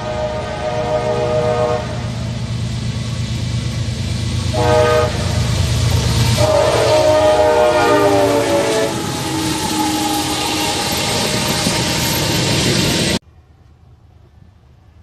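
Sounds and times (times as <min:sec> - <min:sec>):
locomotive air horn: 0:00.0 - 0:02.2, 0:04.5 - 0:11.9
low train rumble: 0:00.0 - 0:15.0.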